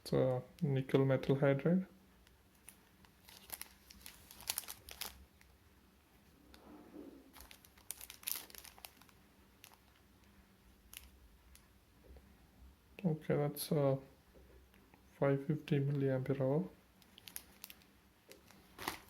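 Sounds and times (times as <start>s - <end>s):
plastic packaging crinkling: 2.5s - 5.5s, 7.3s - 10.0s, 10.8s - 11.6s, 17.0s - 19.0s.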